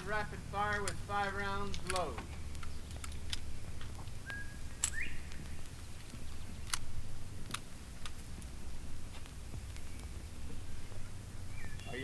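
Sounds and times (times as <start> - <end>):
vinyl record crackle and rumble: 0.0 - 12.0
faint whistling tone: 4.2 - 5.3.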